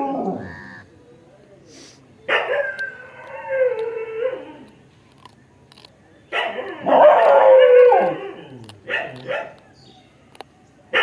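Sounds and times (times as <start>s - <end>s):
dog howling: 2.5s - 4.7s, 6.8s - 8.6s.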